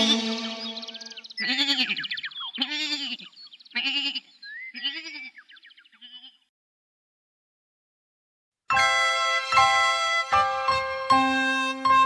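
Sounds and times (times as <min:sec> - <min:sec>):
sheep bleating: 0:01.4 - 0:03.2, 0:03.8 - 0:05.3, 0:06.0 - 0:06.4.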